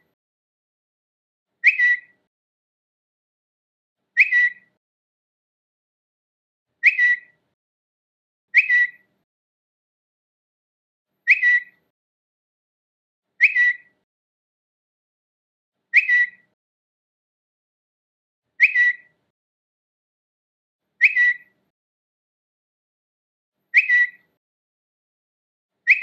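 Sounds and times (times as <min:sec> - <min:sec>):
short high bird-like chirp: 0:01.6 - 0:02.2, 0:04.1 - 0:04.8, 0:06.8 - 0:07.4, 0:08.5 - 0:09.2, 0:11.2 - 0:11.9, 0:13.4 - 0:14.0, 0:15.9 - 0:16.6, 0:18.6 - 0:19.2, 0:21.0 - 0:21.6, 0:23.7 - 0:24.4.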